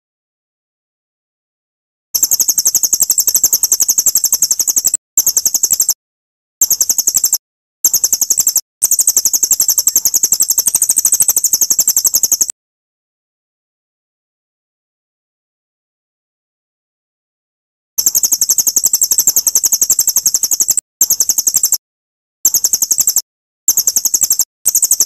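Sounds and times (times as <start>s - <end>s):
high-pitched bird chirping trill: 2.2s - 6.0s, 6.6s - 12.5s, 18.0s - 21.8s, 22.5s - 25.0s.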